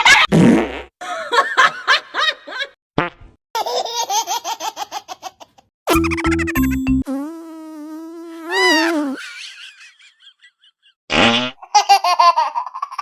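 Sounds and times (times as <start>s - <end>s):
buzzing fart sound: 0.3s - 0.9s, 5.9s - 9.2s, 11.1s - 11.6s
rapid high-pitched laughter: 8.8s - 11.0s.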